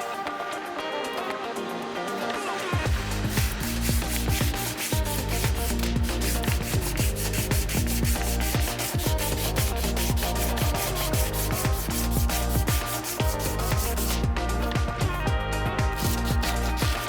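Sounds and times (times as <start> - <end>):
electronic music with steady beat: 0.0 - 17.0.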